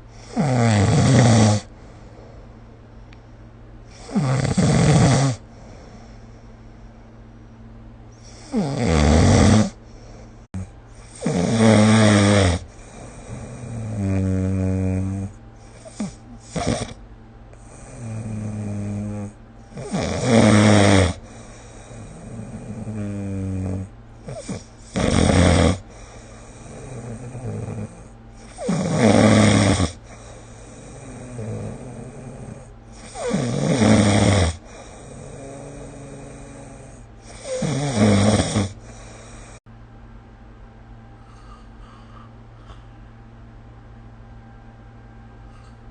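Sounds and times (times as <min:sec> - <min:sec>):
loud snores: 0:00.2 - 0:01.7, 0:03.9 - 0:05.5, 0:08.2 - 0:09.8, 0:10.5 - 0:17.0, 0:17.6 - 0:39.6
quiet breaths: 0:01.6 - 0:04.2, 0:05.4 - 0:08.7, 0:12.6 - 0:20.3, 0:21.2 - 0:25.2, 0:25.8 - 0:33.5, 0:34.2 - 0:39.7, 0:41.0 - 0:43.2, 0:45.4 - 0:45.9.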